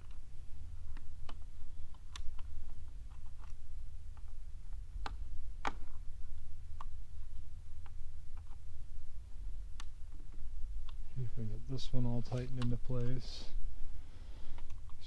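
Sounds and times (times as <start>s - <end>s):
small plastic parts clicking: 0.0s - 7.0s
steady low hum: 0.0s - 15.0s.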